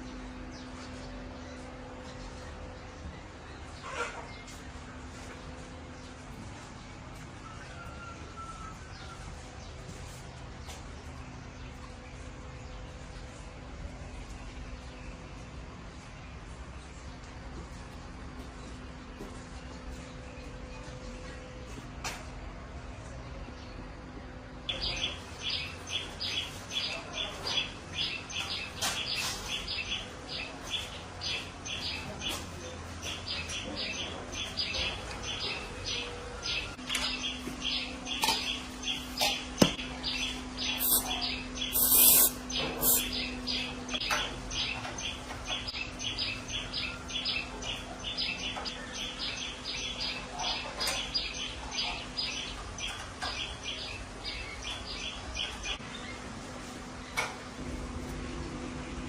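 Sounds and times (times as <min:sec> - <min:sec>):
low steady hum: 0:00.0 - 0:26.3
short high-pitched chirp: 0:40.8 - 0:43.1
brief loud hiss: 0:41.8 - 0:43.1.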